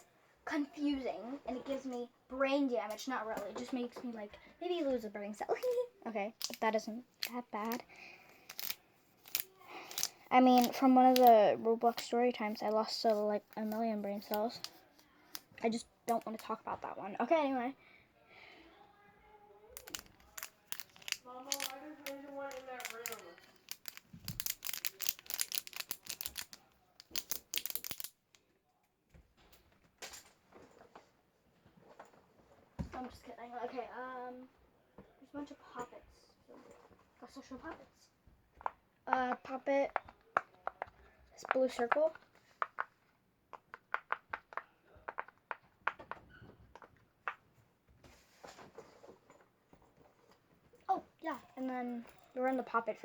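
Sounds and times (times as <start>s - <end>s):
plastic toys clicking and rattling: 5.5s - 16.8s, 19.8s - 28.4s.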